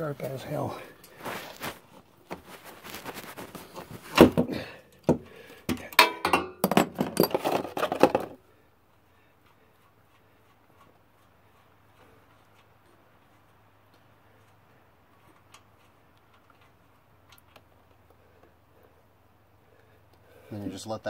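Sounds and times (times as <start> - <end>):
metal tools clinking: 5.9 - 8.4.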